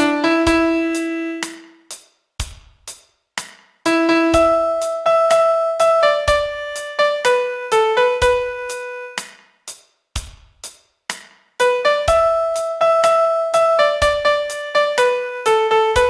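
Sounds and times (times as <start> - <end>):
slow piano melody: 0.0 - 1.7, 3.9 - 9.2, 11.6 - 16.0.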